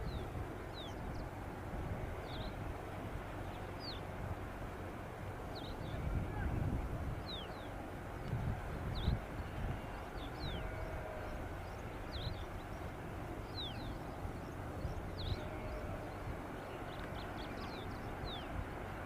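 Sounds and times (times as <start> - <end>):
small birds chirping: 9.0 - 18.6.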